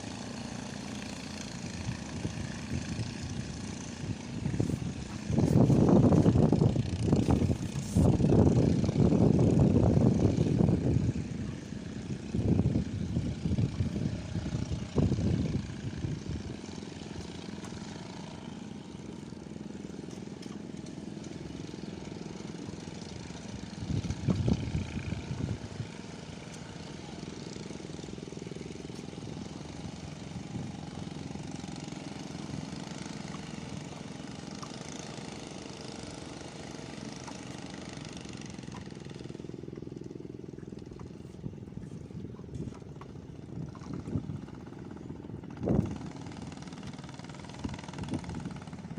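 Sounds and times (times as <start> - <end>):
wind buffeting microphone: 1.6 - 17.9, 23.0 - 26.5, 28.6 - 33.9, 37.9 - 48.9.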